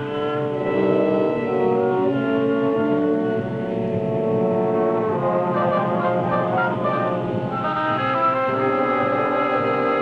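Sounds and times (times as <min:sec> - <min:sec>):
orchestral strings sustained chords: 0:04.8 - 0:08.6.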